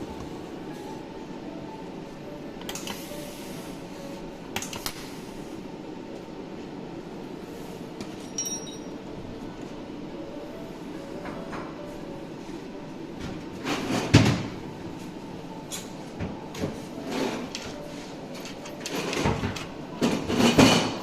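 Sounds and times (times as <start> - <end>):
low mechanical hum: 0.0 - 21.0.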